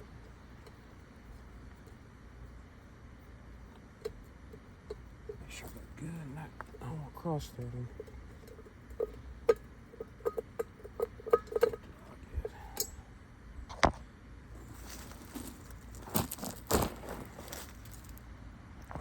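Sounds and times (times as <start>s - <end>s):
lug nuts clinking: 3.6s - 13.0s.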